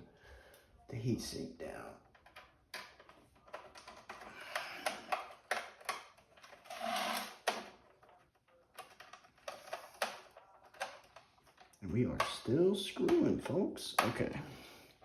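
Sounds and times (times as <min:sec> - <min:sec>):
screwdriver driving a screw: 0:04.8 - 0:07.8.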